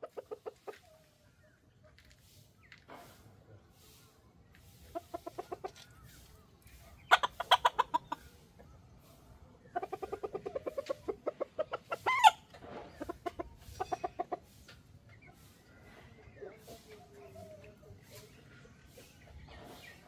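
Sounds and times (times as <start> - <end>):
chickens clucking: 0.0 - 20.0
chicken squawking: 5.0 - 8.4, 9.8 - 14.4.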